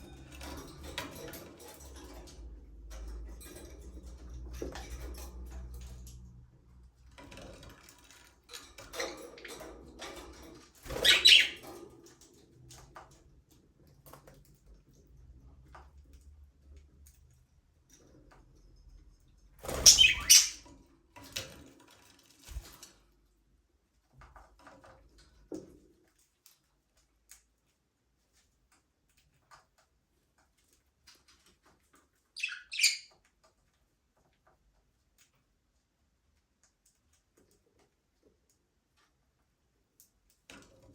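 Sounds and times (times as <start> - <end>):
budgerigars chirping: 11.0 - 11.6, 19.8 - 20.6, 32.4 - 33.1.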